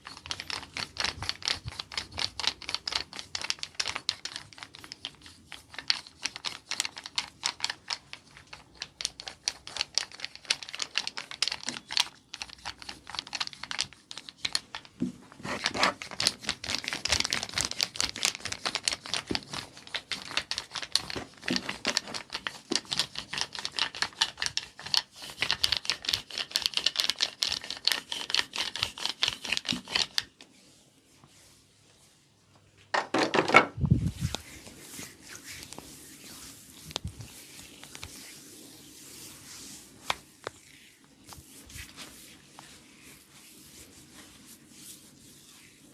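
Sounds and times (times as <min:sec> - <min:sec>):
hands clicking on skin in massage: 0:00.0 - 0:15.0, 0:16.0 - 0:30.4.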